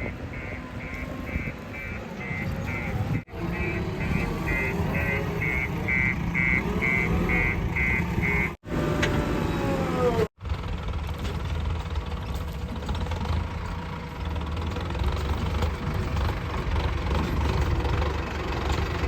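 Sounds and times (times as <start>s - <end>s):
reversing alarm beeping: 0.0s - 8.6s
diesel engine running: 0.0s - 19.0s.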